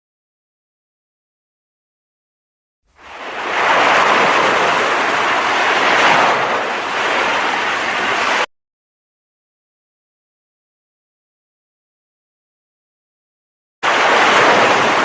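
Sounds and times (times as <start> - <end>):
steady rushing noise: 3.0 - 8.5, 13.8 - 15.0.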